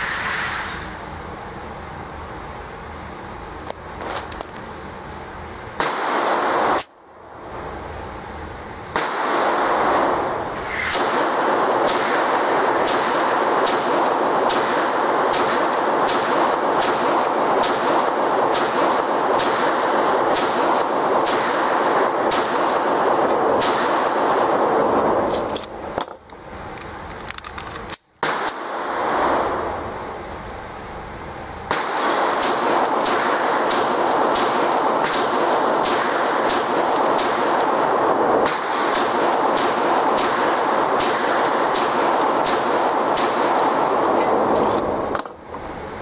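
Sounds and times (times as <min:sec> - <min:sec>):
loud rushing noise: 0:00.0 - 0:01.4, 0:07.8 - 0:25.4
pistol shots: 0:05.8 - 0:07.0, 0:08.9 - 0:26.1, 0:28.2 - 0:29.8, 0:31.7 - 0:45.3.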